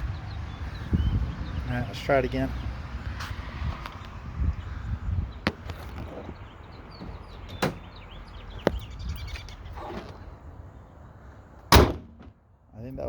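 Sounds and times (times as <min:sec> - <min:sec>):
birds chirping faintly: 0:00.0 - 0:11.7
hood latch metallic clicks: 0:07.0 - 0:07.9, 0:11.7 - 0:12.4.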